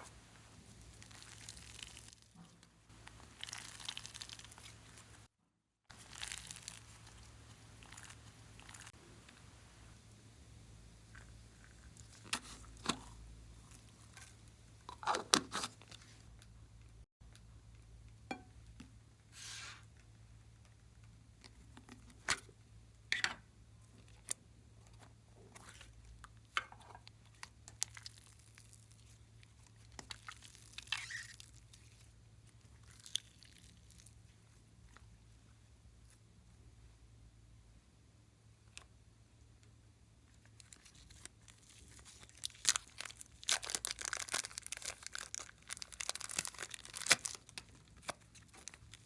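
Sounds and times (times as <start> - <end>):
slime squishing with wet pops: 0.0 - 5.3, 5.9 - 9.4, 25.5 - 35.1, 40.3 - 49.0.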